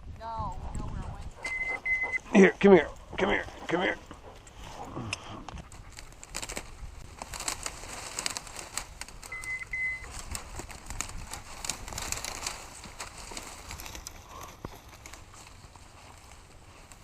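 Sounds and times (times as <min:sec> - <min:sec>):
short high beeps: 0:01.4 - 0:02.2, 0:09.3 - 0:10.1
twigs snapping underfoot: 0:04.4 - 0:17.0.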